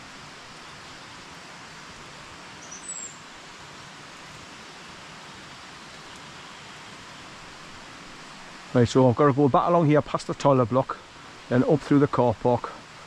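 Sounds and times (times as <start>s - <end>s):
outdoor background hiss: 0.0s - 13.0s
bird chirp: 2.6s - 3.2s.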